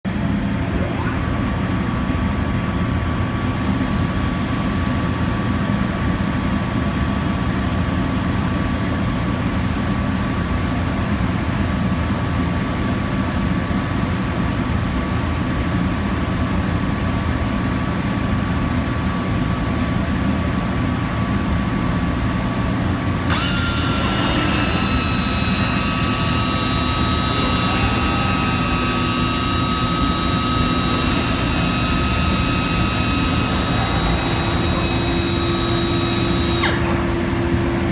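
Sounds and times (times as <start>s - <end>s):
cnc router humming with whine: 0.1s - 6.8s, 22.7s - 37.9s
high-pitched whines with hiss: 23.3s - 37.8s.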